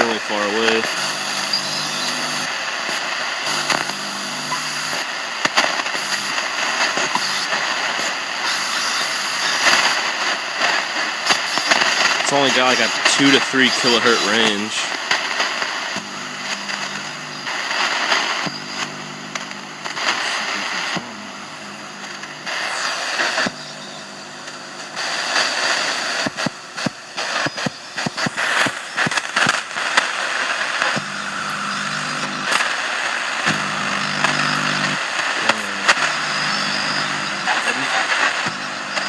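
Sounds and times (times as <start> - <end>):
digital radio signal: 0.0 - 39.0
radio static: 0.0 - 39.0
low steady tones: 9.4 - 29.9.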